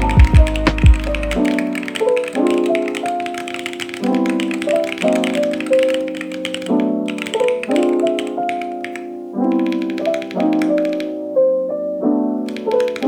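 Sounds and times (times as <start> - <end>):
light tapping beat: 0.0 - 8.8
soft keyboard chords: 0.0 - 13.0.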